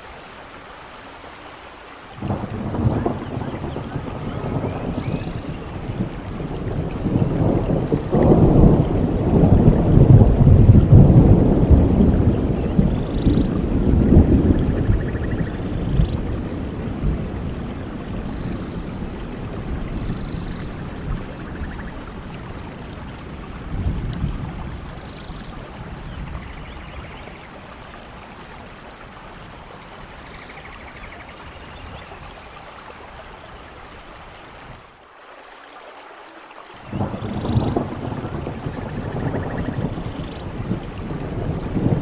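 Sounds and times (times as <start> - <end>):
steady rain: 0.0 - 42.0
low rolling thunder: 2.2 - 27.8, 36.8 - 42.0.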